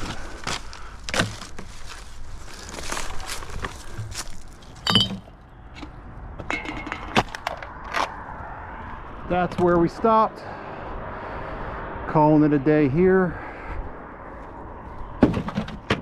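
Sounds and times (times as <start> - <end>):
rustling: 0.0 - 5.3
footsteps: 0.0 - 5.9
litter clinking and knocking: 4.8 - 5.3, 6.4 - 7.2.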